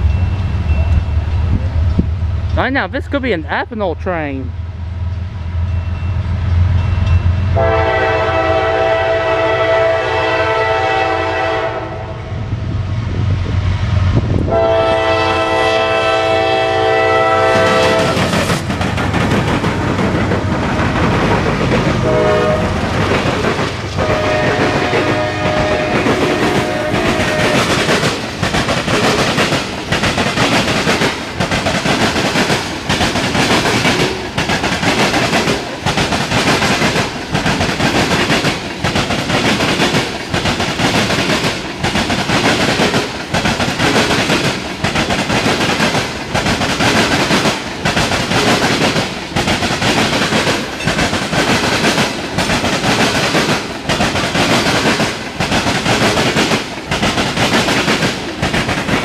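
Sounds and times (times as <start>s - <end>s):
train horn blasts: 7.6s - 12.3s, 14.5s - 18.3s, 22.0s - 22.8s, 24.0s - 27.9s
train wheels clacking over rail joints: 14.5s - 59.0s.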